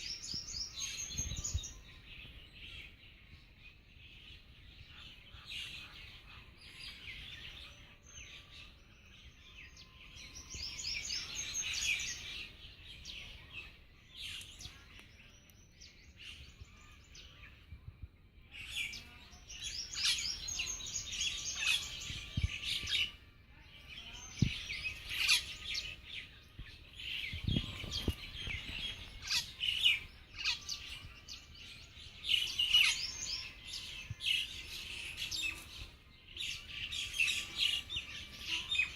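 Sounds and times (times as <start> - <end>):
birds chirping: 0.0 - 38.9.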